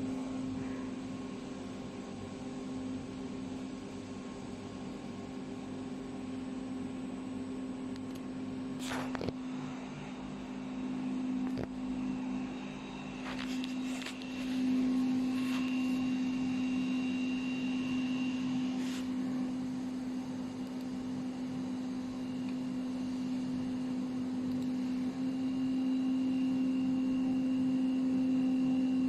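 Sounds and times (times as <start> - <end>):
laser cutting machine humming: 0.0 - 29.0
faint high whine: 8.8 - 29.0.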